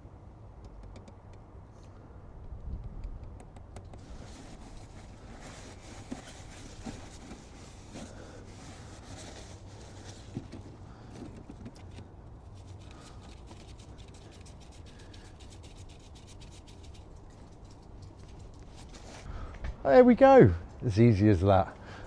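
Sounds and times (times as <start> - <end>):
low steady hum: 0.0 - 22.0
rubbing and handling noises: 3.9 - 19.3
small ticks: 12.6 - 18.9.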